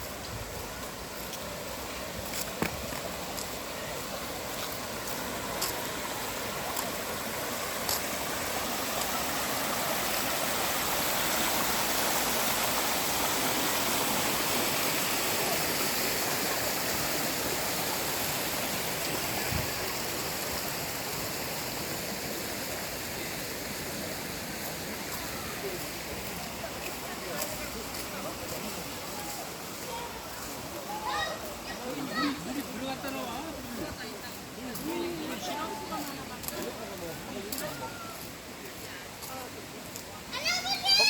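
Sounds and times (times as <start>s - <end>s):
stream rushing over rocks: 0.0s - 41.0s.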